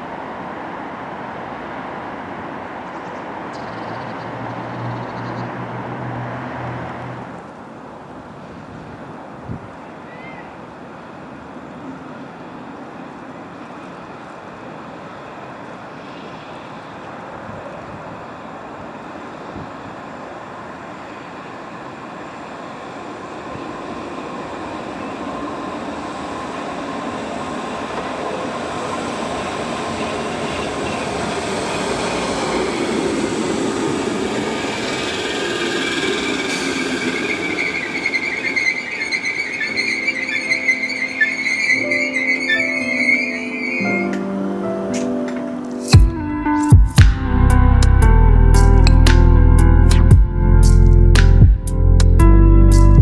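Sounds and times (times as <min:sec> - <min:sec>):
electric train rumble: 0:00.0 - 0:53.0
high whine: 0:30.3 - 0:53.0.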